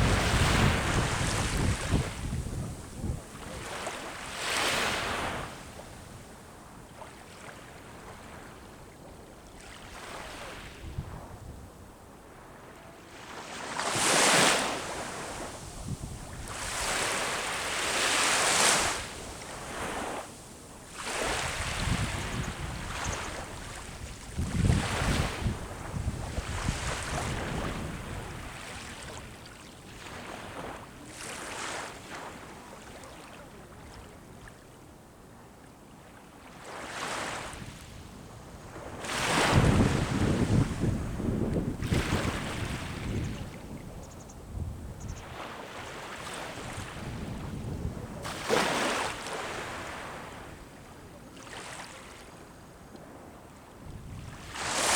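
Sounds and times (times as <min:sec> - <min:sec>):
wind rumble on microphone: 0:00.0 - 0:03.9, 0:10.6 - 0:12.0, 0:15.0 - 0:17.3, 0:21.1 - 0:29.4, 0:37.6 - 0:45.4, 0:46.6 - 0:48.3, 0:53.8 - 0:54.9
sea waves breaking on shore: 0:00.0 - 0:11.4, 0:12.1 - 0:34.6, 0:36.1 - 0:54.9.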